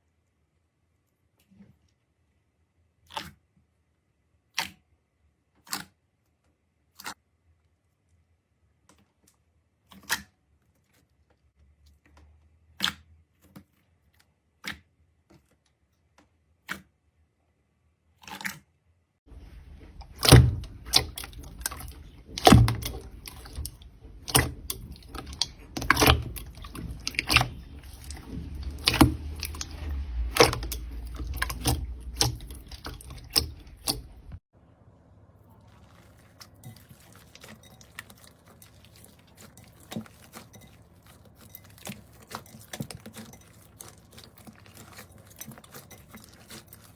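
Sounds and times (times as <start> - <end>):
slime popping and squelching: 19.3 - 34.4, 35.5 - 46.9.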